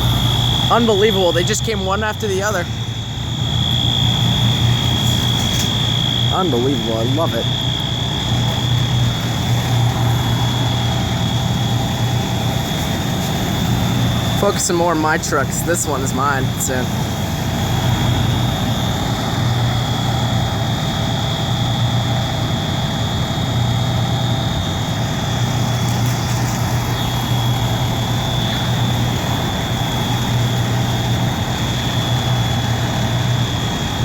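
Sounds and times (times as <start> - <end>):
steady high-pitched tone: 0.0 - 13.2
diesel engines idling: 0.0 - 34.0.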